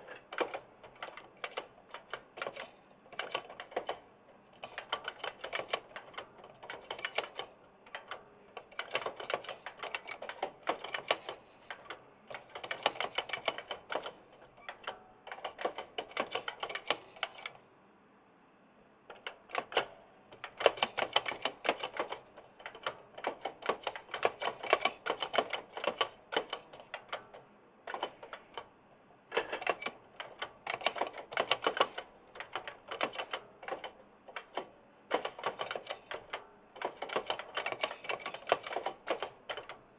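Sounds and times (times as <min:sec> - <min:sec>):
mechanical keyboard typing: 0:00.0 - 0:17.6, 0:19.1 - 0:28.7, 0:29.3 - 0:39.8.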